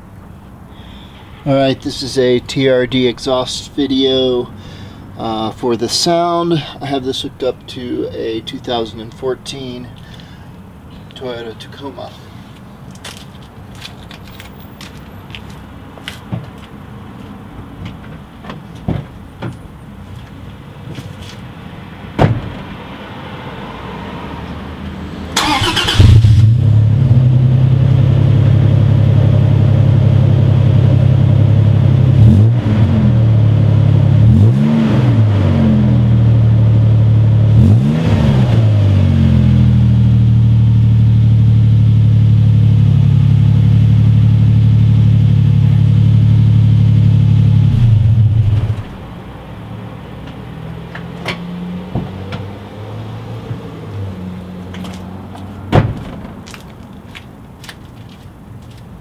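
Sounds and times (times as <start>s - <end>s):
engine starter cranking: 25.4s - 26.5s
engine throttle blips: 25.4s - 28.4s.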